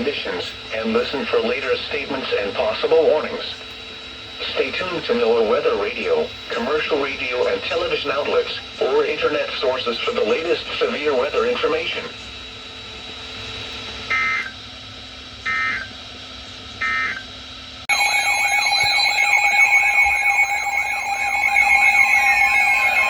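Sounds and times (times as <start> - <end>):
warbling attention alarm: 14.1 - 14.5, 15.5 - 15.9, 16.8 - 17.2, 17.9 - 23.0
digital header data bursts: 17.9 - 23.0.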